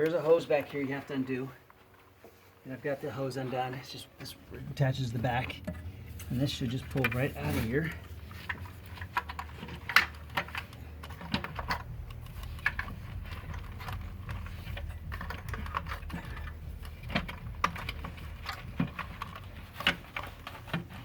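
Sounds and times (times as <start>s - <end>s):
steady low hum: 1.5s - 21.0s
light clicks and knocks of tools: 5.3s - 21.0s.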